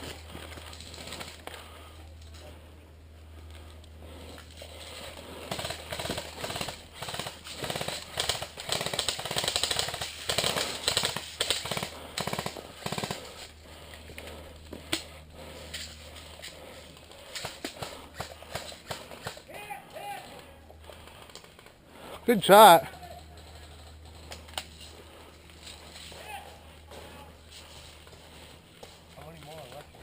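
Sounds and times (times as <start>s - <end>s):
airsoft rifle firing bursts: 5.5s - 13.3s.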